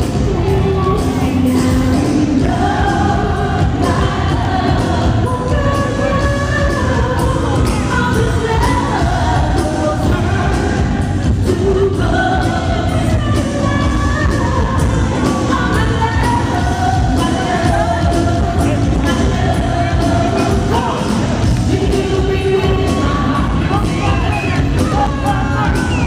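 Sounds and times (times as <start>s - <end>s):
woman singing: 0.0s - 26.0s.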